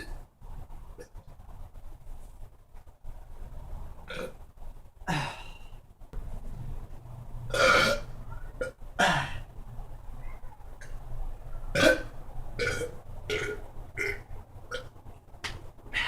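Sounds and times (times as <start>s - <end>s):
man burping: 7.5s - 9.5s, 11.7s - 14.9s.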